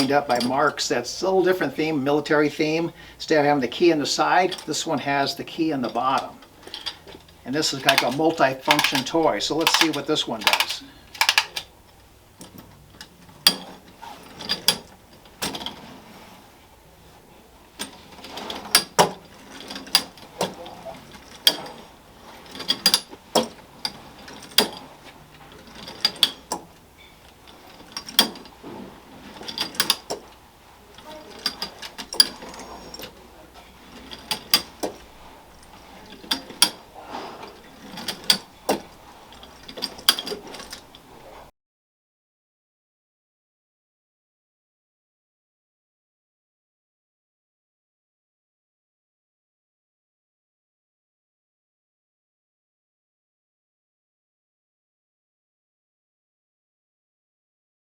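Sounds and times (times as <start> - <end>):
tin toy clattering clicks: 7.9 - 11.7.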